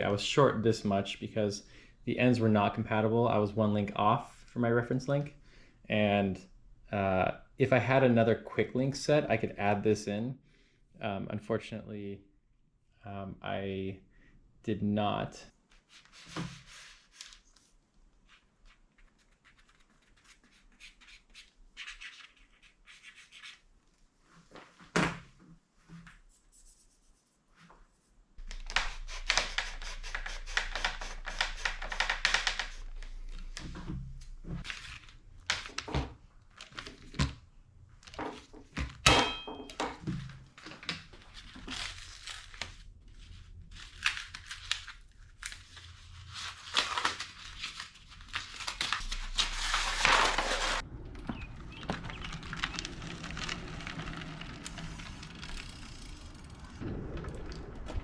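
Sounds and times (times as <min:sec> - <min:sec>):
clicking and rustling: 0:50.1 - 0:58.0.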